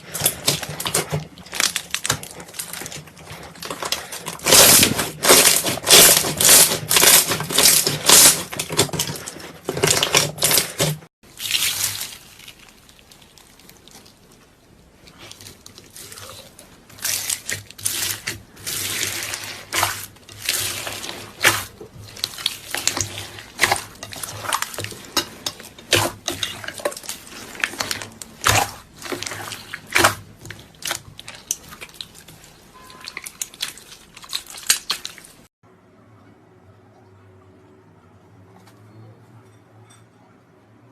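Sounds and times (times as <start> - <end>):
slime squelching: 0.0 - 35.5.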